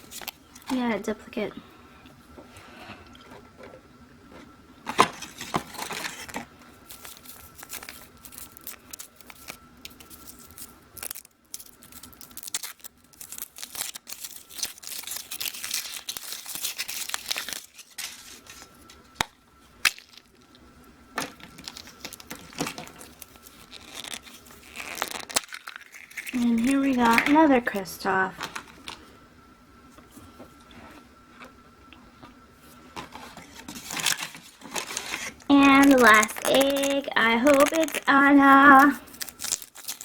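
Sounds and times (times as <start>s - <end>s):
foil wrapper crinkling: 0.0s - 1.0s, 4.9s - 20.6s, 21.2s - 29.0s, 32.9s - 40.0s.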